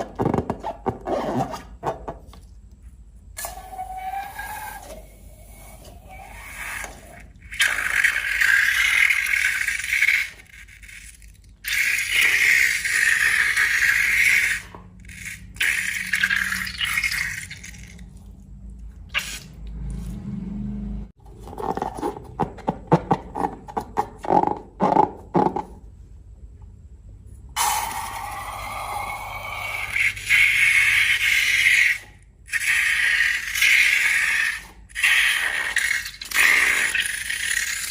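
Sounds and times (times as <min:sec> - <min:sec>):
slime hissing: 0:03.4 - 0:18.0, 0:19.1 - 0:19.6, 0:27.6 - 0:37.9.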